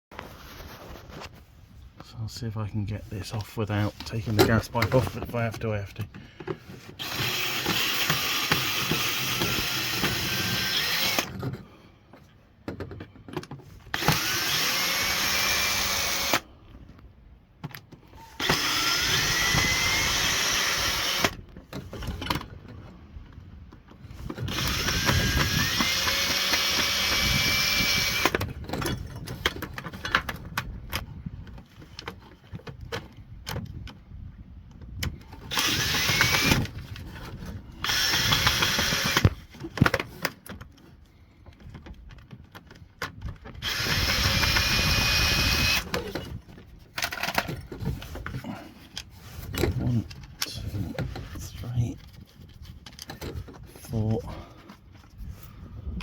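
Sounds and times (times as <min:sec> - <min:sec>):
cordless drill whine: 0:06.9 - 0:11.4, 0:13.9 - 0:16.5, 0:18.2 - 0:21.4, 0:24.4 - 0:28.5, 0:35.4 - 0:36.9, 0:37.8 - 0:39.4, 0:43.6 - 0:46.3
clicks and handling: 0:45.6 - 0:54.0.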